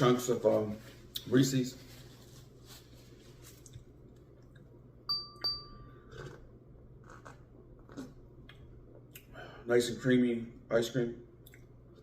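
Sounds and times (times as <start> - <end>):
quick dings: 5.1 - 5.9.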